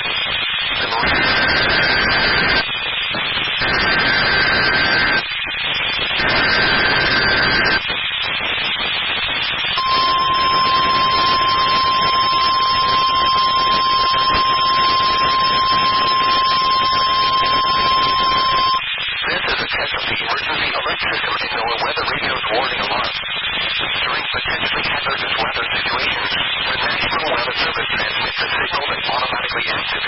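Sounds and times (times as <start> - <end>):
radio static hiss: 0.0 - 30.0
steady alarm tone: 3.6 - 5.2, 6.2 - 7.8, 9.8 - 18.8
rasping digital data bursts: 9.8 - 18.8.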